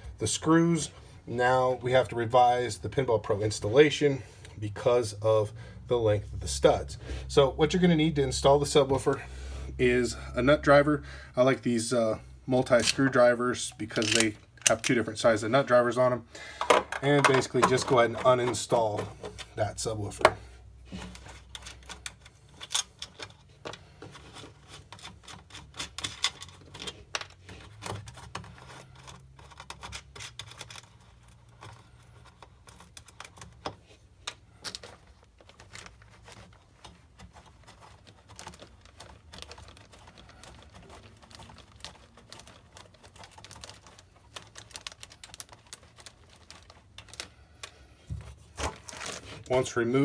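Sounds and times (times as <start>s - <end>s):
nut driver clicking and tapping: 14.0s - 14.9s.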